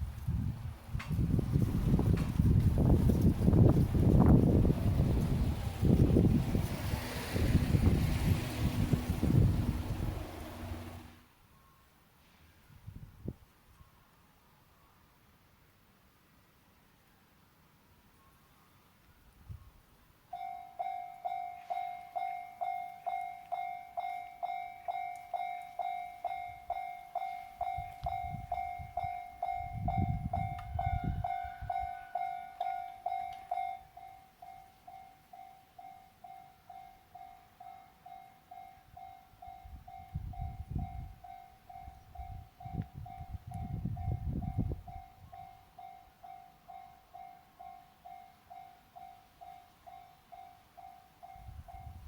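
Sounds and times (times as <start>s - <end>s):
trains passing: 0.0s - 11.3s
level crossing alarm bell: 20.3s - 43.4s.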